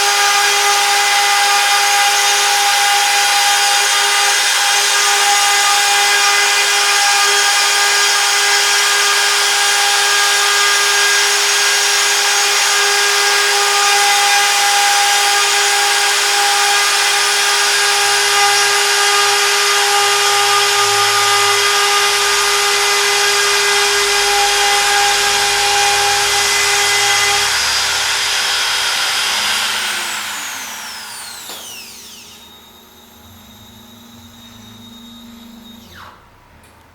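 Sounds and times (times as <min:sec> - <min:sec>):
router spindle whine: 0:00.0 - 0:36.5
spindle spinning down: 0:29.2 - 0:32.5.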